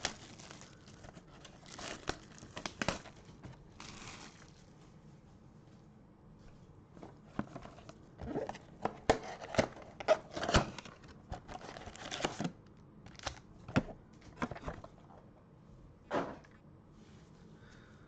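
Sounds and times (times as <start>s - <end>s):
plastic packaging crinkling and tearing: 0.0s - 4.8s, 7.5s - 13.4s.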